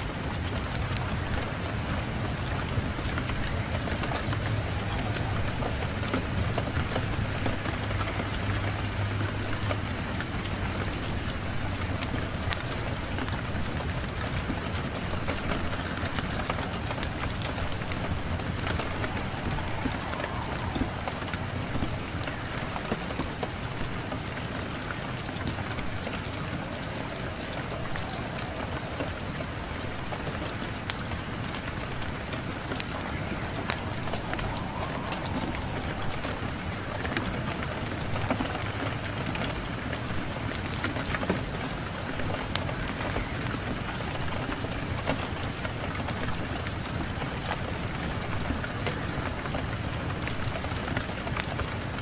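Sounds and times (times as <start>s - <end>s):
wood fire crackling: 0.0s - 52.0s
wind rushing: 1.0s - 8.6s, 14.0s - 39.2s.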